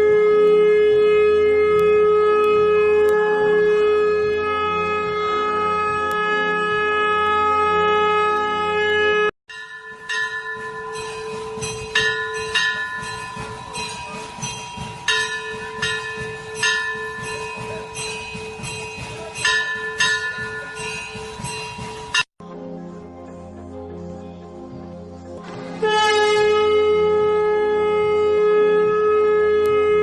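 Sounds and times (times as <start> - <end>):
brass bell ringing: 9.5 - 22.3.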